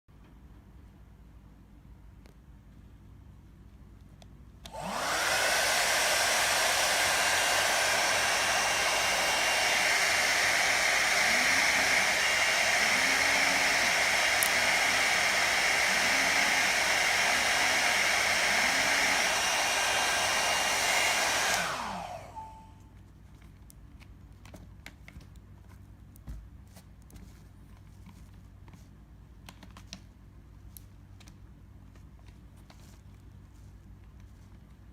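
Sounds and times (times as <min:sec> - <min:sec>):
hot air brush blowing: 0:04.7 - 0:22.7.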